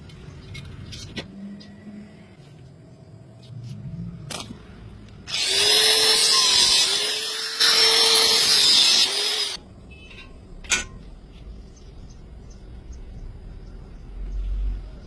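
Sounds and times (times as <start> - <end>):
power tool motor whining: 5.3 - 9.6.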